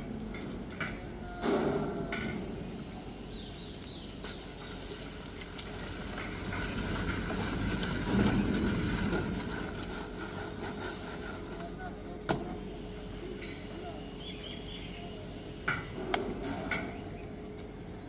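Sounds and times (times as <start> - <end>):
construction machinery running: 0.0 - 18.0
knocks and clatter: 5.7 - 10.2.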